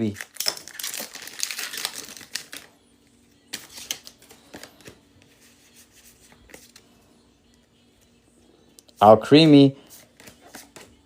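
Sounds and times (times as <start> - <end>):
foil wrapper crinkling: 0.0 - 2.7.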